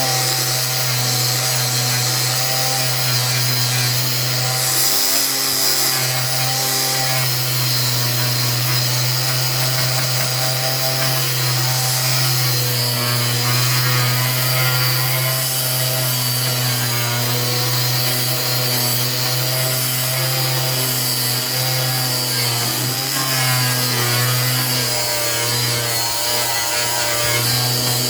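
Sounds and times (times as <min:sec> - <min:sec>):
angle grinder sanding wood: 0:00.0 - 0:28.0.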